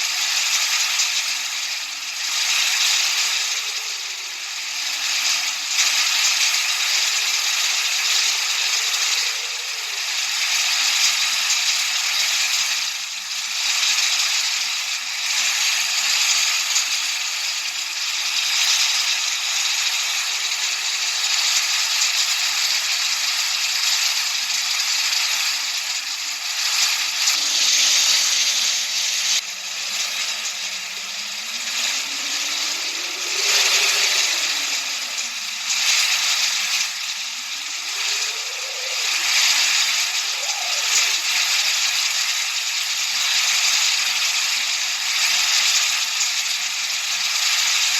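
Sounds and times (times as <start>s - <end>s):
steady hiss: 0.0s - 47.9s
low sliding tone: 27.4s - 39.3s.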